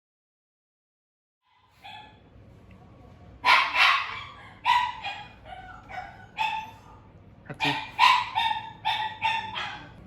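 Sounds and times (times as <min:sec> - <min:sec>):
dog barking high-pitched: 0:01.8 - 0:02.2, 0:03.4 - 0:07.0, 0:07.6 - 0:10.0.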